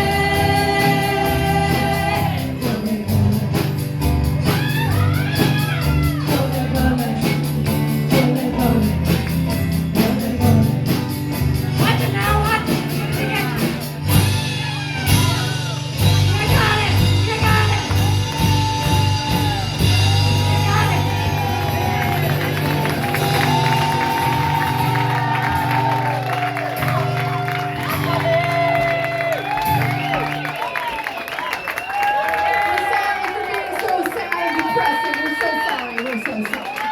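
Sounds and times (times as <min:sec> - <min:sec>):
lead singer singing: 0:00.0 - 0:03.9, 0:04.7 - 0:11.2
bass line: 0:00.0 - 0:30.6
live band playing: 0:00.0 - 0:36.9
drum beat: 0:00.6 - 0:30.5.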